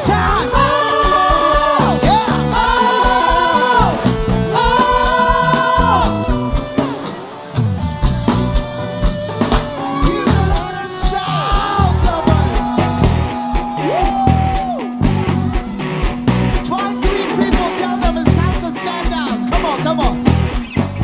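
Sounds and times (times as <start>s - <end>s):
voices singing long notes: 0.0s - 7.4s, 8.2s - 16.1s
band playing worship song: 0.0s - 21.0s.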